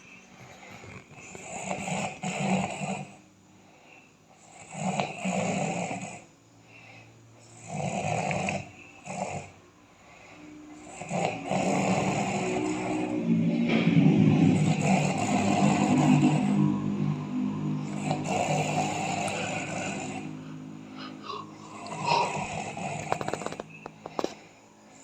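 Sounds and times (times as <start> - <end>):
person snoring loudly: 0.6 - 3.2, 7.5 - 9.6, 10.8 - 24.4
short snort: 18.0 - 23.6.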